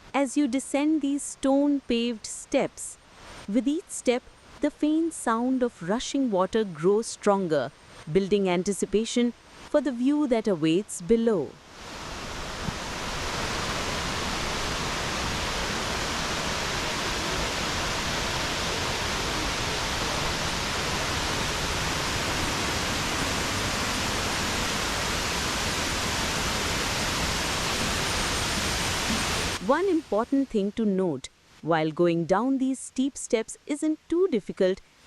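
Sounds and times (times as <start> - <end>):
waterfall rushing: 11.7 - 29.7.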